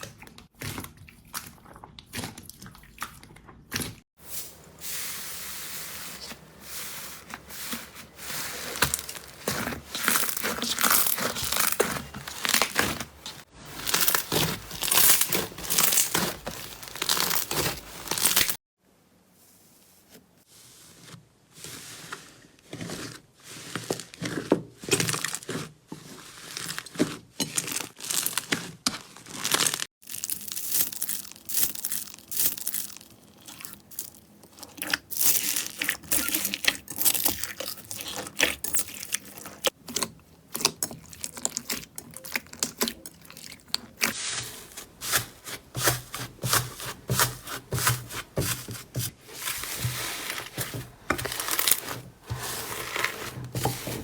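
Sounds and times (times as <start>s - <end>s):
slime crackling and popping: 29.2s - 39.8s.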